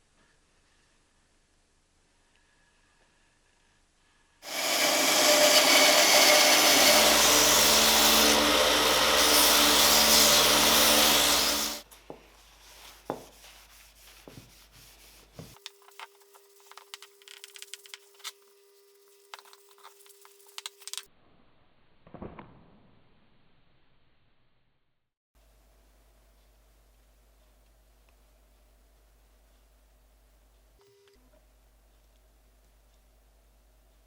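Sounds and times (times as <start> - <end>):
angle grinder sanding steel: 4.4 - 11.9.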